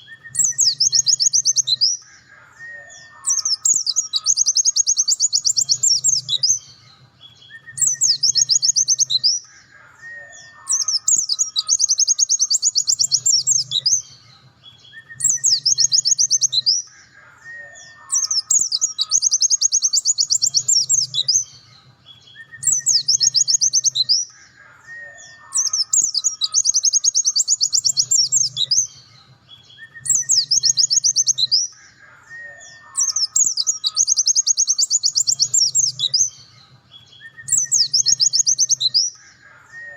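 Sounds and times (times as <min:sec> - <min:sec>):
bird high-pitched trills: 0:00.0 - 0:21.6, 0:22.2 - 0:36.4, 0:37.0 - 0:39.9.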